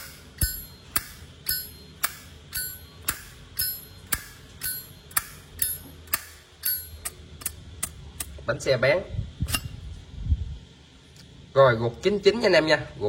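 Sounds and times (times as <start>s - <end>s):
bright metallic ping: 0.0s - 7.2s.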